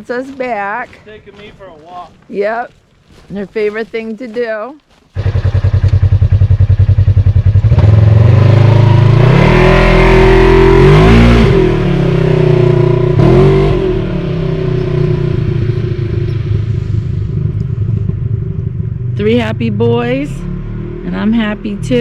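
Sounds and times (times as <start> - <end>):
engine revving: 5.2 - 22.0.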